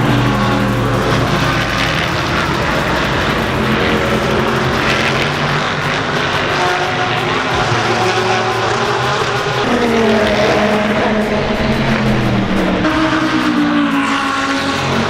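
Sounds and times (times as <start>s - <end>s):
race car engines: 0.0s - 15.0s.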